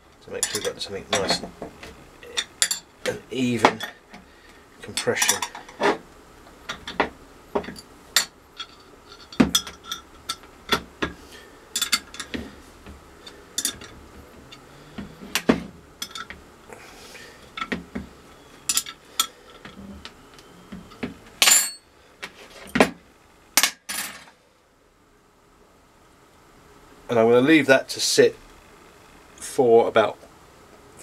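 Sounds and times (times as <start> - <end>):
metal rattle: 7.6 - 10.9.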